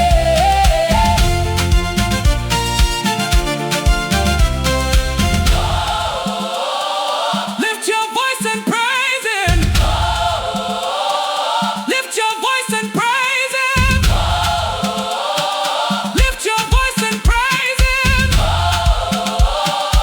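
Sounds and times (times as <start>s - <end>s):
deep bass: 0.0s - 6.2s, 9.5s - 10.5s, 13.8s - 14.8s, 18.1s - 19.1s
choir singing with vibrato: 0.0s - 20.0s.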